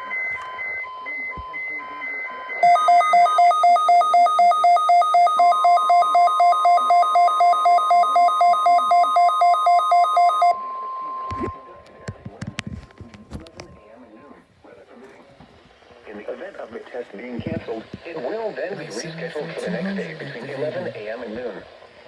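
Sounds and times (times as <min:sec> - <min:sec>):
electronic alarm beeping: 0:00.0 - 0:11.8
steady warning alarm tone: 0:00.0 - 0:11.8.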